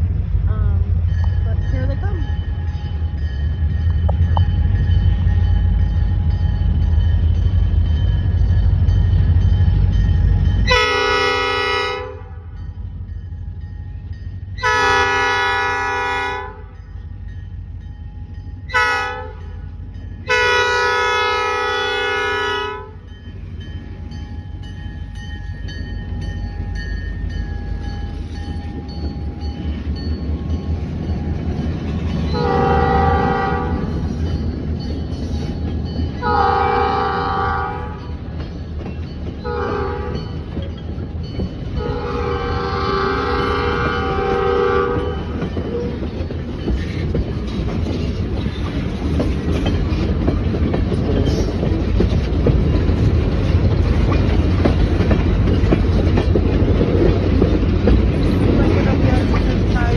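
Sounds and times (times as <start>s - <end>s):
train rumbling: 0.0s - 59.9s
locomotive air horn blasts: 10.7s - 12.5s, 14.6s - 16.8s, 18.7s - 19.5s, 20.3s - 23.0s, 32.4s - 33.9s, 36.2s - 38.0s, 39.5s - 40.3s, 41.8s - 46.0s.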